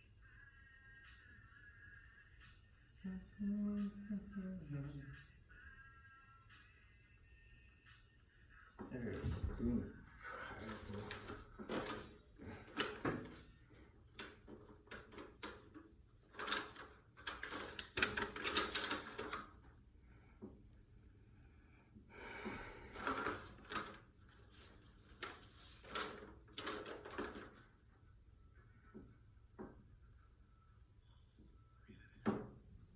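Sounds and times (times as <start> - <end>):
rustling and knocking handling noises: 10.6 - 19.7, 23.0 - 27.7.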